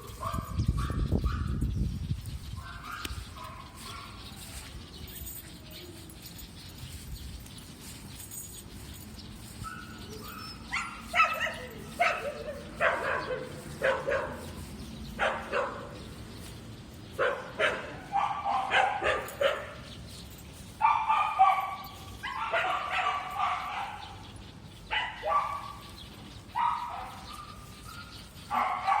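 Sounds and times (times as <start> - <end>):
dog barking and yelping: 0.0 - 1.6, 2.6 - 4.2, 9.6 - 16.0, 17.2 - 19.9, 20.8 - 29.0.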